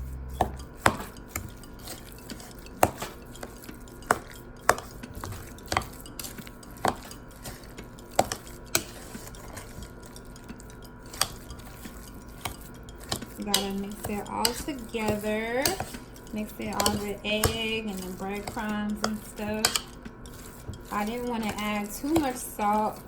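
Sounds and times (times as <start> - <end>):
utensil clinking against bowl: 0.3 - 23.0.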